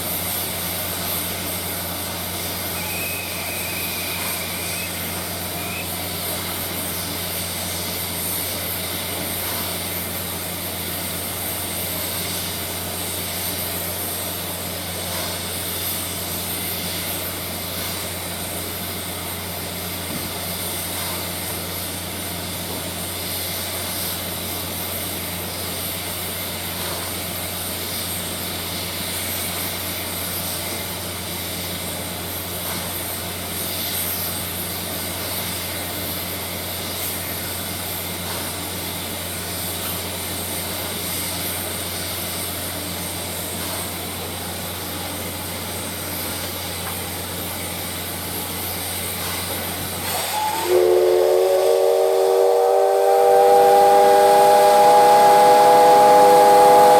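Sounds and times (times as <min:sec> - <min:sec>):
steam locomotive hissing: 0:00.0 - 0:56.9
steam whistle blowing: 0:02.2 - 0:08.4, 0:50.0 - 0:56.9.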